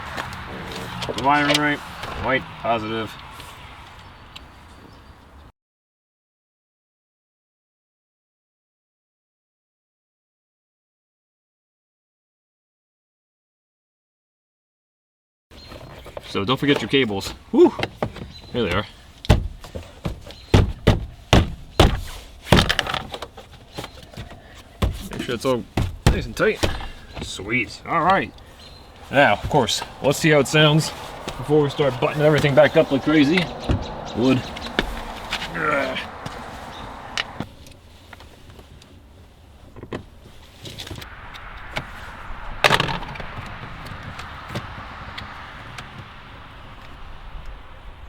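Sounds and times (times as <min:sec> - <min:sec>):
clicks and knocks on car door: 0:17.8 - 0:23.3, 0:23.9 - 0:27.3
knocks on car door trim: 0:19.3 - 0:22.8.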